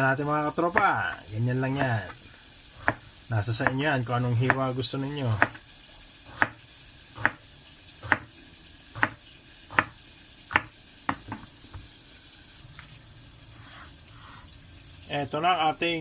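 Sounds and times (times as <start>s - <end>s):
knife cutting on a board: 2.8s - 3.0s, 7.2s - 7.4s, 8.0s - 8.3s, 9.0s - 11.8s.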